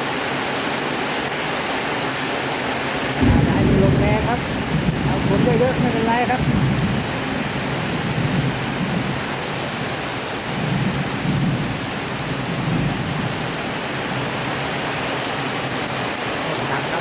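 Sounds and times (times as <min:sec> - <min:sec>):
heavy rain pouring: 0:00.0 - 0:17.0
deep rumble: 0:03.2 - 0:09.3.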